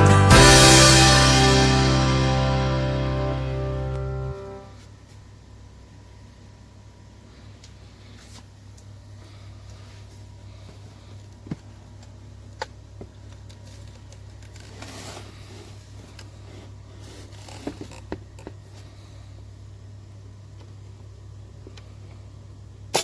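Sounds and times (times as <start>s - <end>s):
steady low hum: 0.0s - 14.5s.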